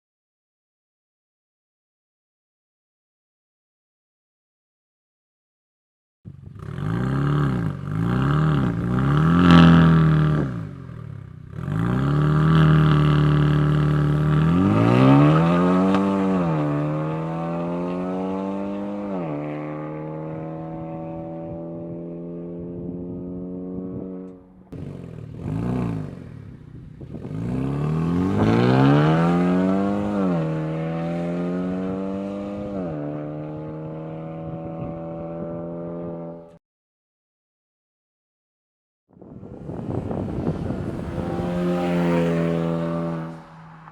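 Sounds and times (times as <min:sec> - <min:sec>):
turbocharged car engine revving: 0:06.6 - 0:21.7, 0:27.2 - 0:34.4, 0:39.3 - 0:43.9.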